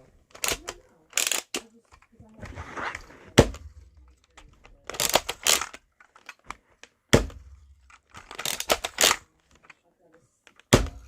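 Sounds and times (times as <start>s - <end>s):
rattling clicking handling noises: 0.0s - 2.2s, 3.6s - 10.7s
sharp knock: 7.1s - 7.5s.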